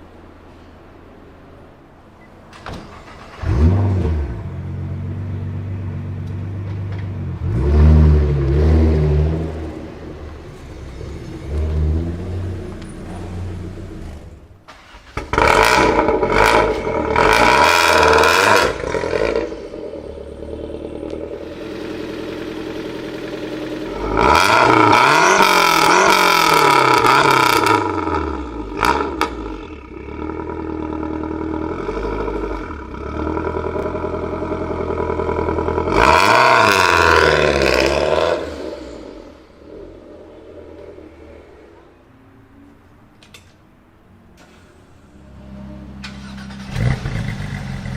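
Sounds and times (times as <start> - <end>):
car engine idling: 0.0 - 42.2, 44.4 - 47.9
car engine revving: 3.0 - 42.1, 44.4 - 47.9.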